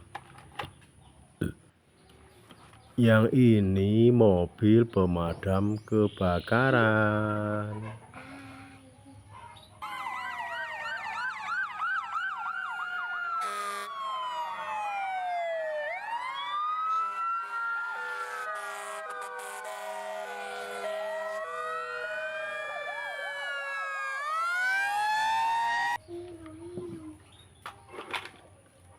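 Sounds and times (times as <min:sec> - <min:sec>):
electronic sirens yelping and wailing: 0:09.8 - 0:26.0.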